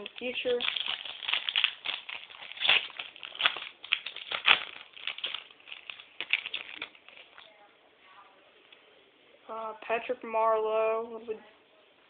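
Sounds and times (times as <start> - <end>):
card pack wrapper crinkling: 0.0 - 7.5.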